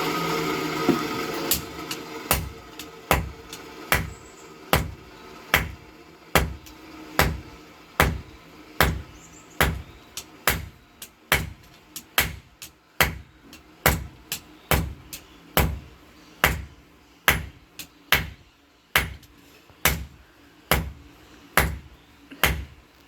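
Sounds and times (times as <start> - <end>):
hammer striking steel on an anvil: 1.5 - 5.8, 6.4 - 15.8, 16.4 - 16.7, 17.3 - 18.4, 19.9 - 21.0, 21.6 - 22.7.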